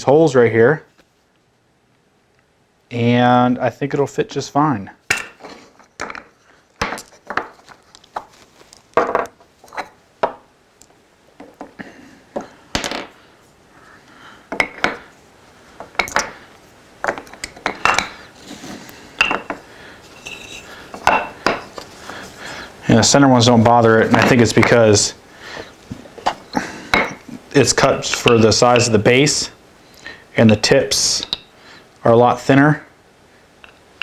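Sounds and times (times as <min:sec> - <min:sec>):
metal sockets clinking: 0:19.2 - 0:21.9.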